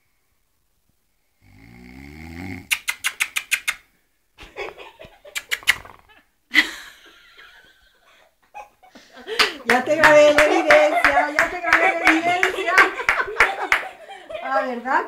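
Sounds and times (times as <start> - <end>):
person snoring: 1.4 - 2.7.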